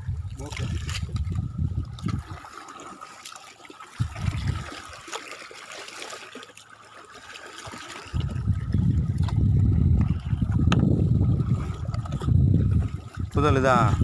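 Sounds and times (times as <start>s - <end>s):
low rumble: 0.0s - 2.4s, 4.0s - 4.7s, 8.2s - 14.0s
water trickling and splashing: 0.0s - 14.0s.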